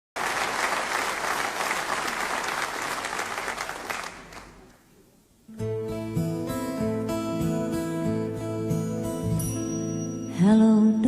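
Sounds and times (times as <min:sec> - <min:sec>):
audience applauding: 0:00.2 - 0:04.8
acoustic guitar strumming: 0:05.5 - 0:11.0.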